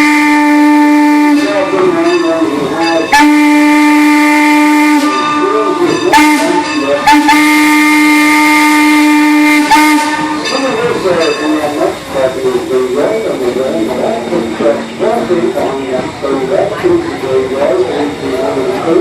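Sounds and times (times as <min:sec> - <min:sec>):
steam locomotive whistle blasts: 0:00.0 - 0:11.4.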